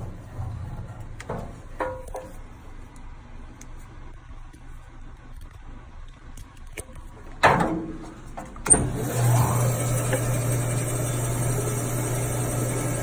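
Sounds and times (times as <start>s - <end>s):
band saw motor humming and whining: 8.8s - 13.0s.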